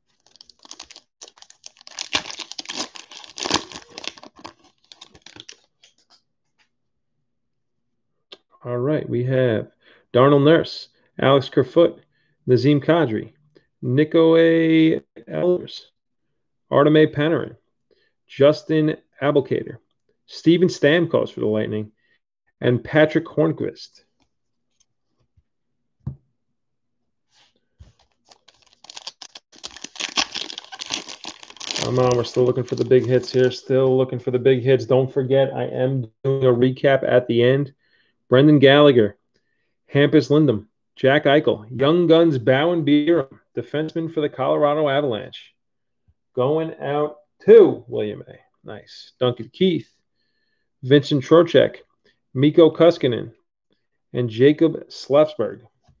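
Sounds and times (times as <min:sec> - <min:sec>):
foil wrapper tearing and crinkling: 0:00.1 - 0:05.7, 0:27.9 - 0:33.6.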